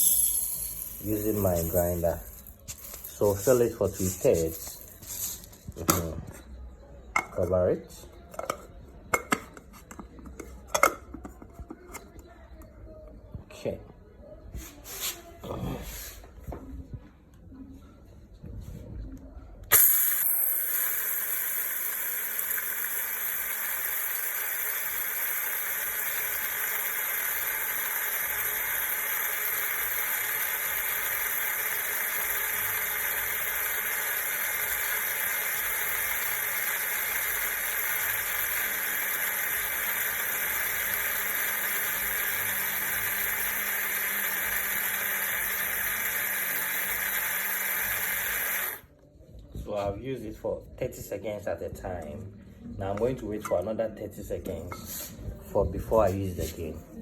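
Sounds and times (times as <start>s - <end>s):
coffee grinder whirring: 0.0s - 6.2s, 19.7s - 48.9s.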